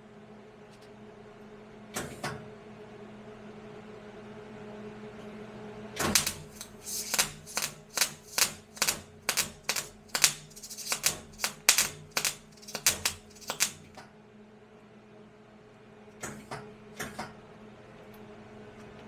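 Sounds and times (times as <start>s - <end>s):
steady low hum: 6.0s - 14.0s
sharp taps: 6.2s - 14.0s.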